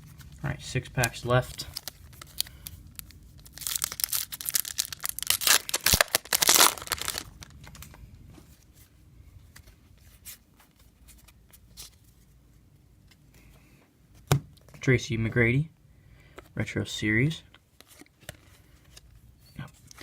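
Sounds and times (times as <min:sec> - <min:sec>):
cards clicking and rustling: 0:01.0 - 0:08.0
wrapper crinkling as torn: 0:01.0 - 0:08.0.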